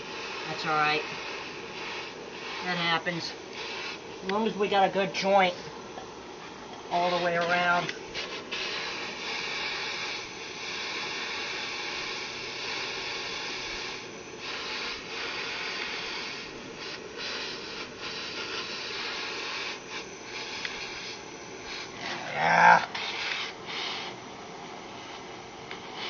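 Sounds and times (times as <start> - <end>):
torch flame hissing: 0.0 - 26.0.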